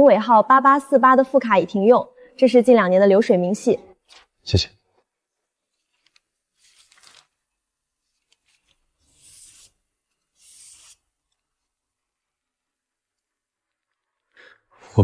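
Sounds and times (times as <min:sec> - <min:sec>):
paper rustling: 0:05.6 - 0:11.4.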